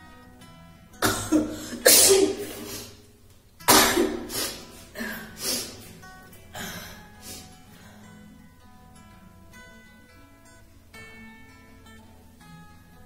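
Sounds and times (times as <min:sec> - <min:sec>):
woman sneezing: 0:01.0 - 0:03.0, 0:03.7 - 0:05.8.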